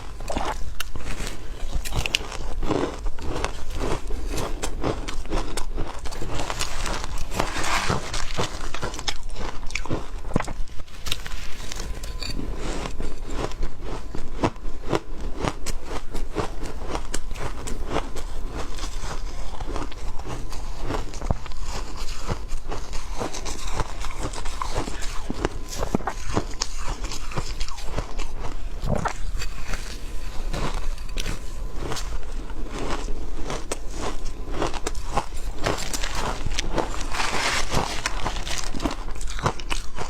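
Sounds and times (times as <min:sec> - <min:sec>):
ice being crunched and chewed: 0:00.0 - 0:40.0.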